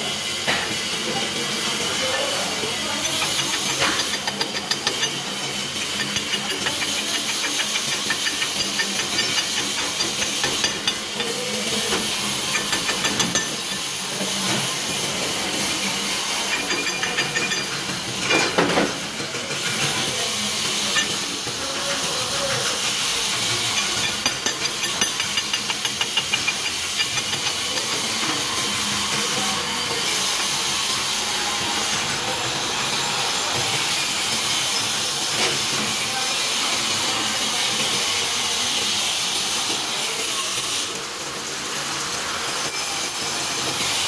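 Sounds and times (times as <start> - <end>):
arc welding hiss and crackle: 0.0 - 44.0.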